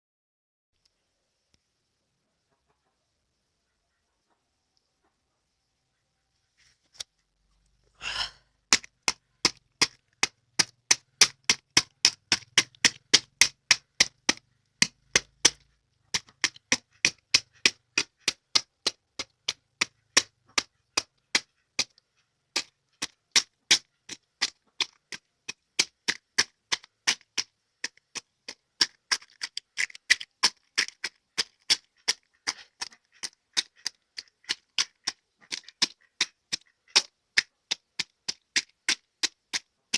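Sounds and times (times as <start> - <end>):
bill rasp: 8.0 - 8.4
duck bill tapping: 8.6 - 39.9.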